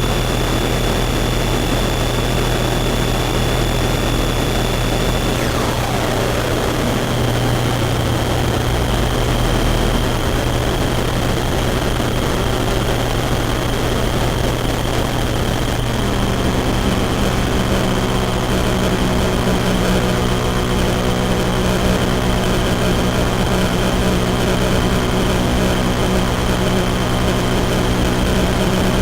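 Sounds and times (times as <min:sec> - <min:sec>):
buzzing chord: 0:00.0 - 0:29.0
low hum: 0:00.0 - 0:29.0
synthesizer noise drone: 0:00.0 - 0:29.0
thin high whine: 0:00.0 - 0:29.0
downward sweeping tone: 0:04.0 - 0:10.6.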